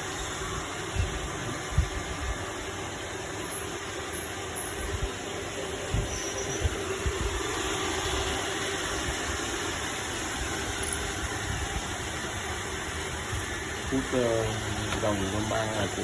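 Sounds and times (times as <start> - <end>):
robot vacuum whirring: 3.3 - 11.6.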